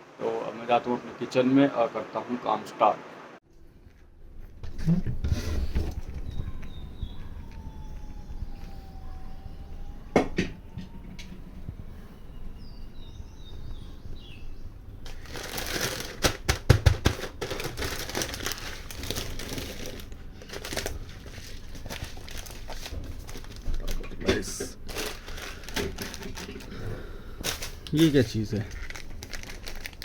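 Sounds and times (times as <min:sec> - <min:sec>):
plastic packaging crinkling: 0:15.0 - 0:26.7, 0:27.4 - 0:30.0.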